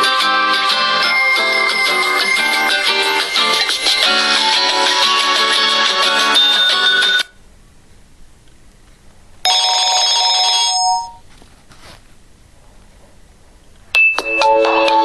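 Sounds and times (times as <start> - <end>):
mobile phone ringtone: 0.0 - 7.3, 9.5 - 11.2.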